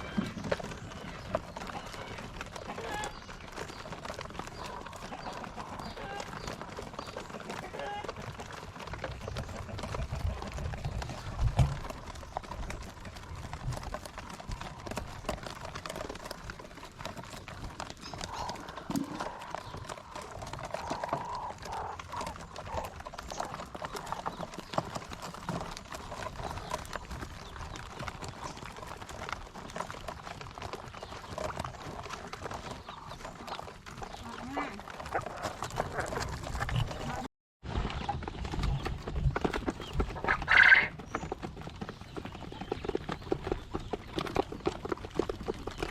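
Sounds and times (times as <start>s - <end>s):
quail tapping and scratching: 0.0s - 45.9s
soft quail calls: 20.8s - 22.9s, 40.2s - 41.0s.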